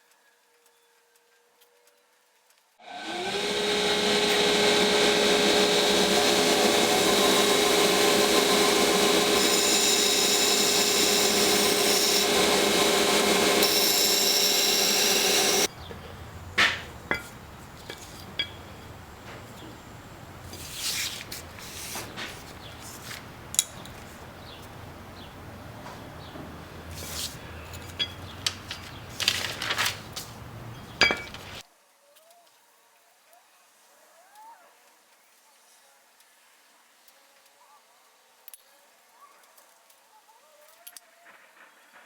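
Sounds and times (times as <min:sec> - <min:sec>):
power tool running: 0:02.8 - 0:29.2.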